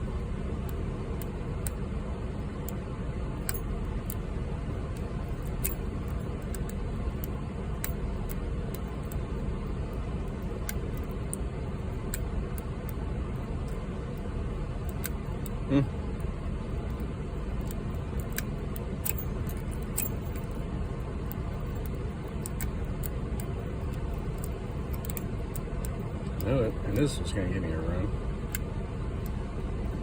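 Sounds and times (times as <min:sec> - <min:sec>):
steady low rumble: 0:00.0 - 0:30.0
lock pick clicking in padlock: 0:21.3 - 0:26.5.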